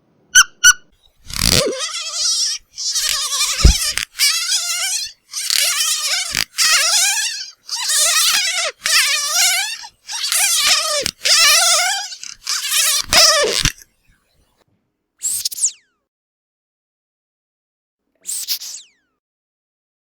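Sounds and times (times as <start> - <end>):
squeaky dog toy squealing: 0.4 - 13.8.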